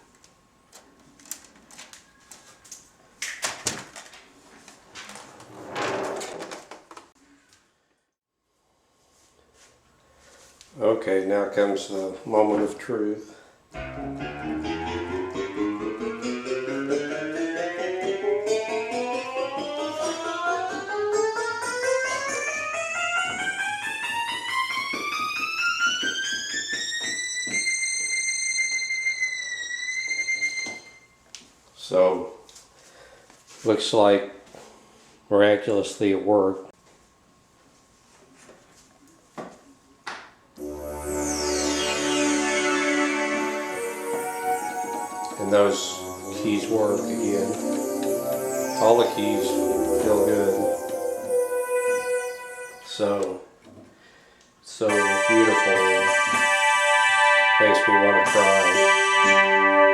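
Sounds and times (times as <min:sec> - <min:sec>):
synthesizer notes: 0:13.8 - 0:26.6, 0:40.6 - 0:53.0, 0:54.9 - 0:59.9.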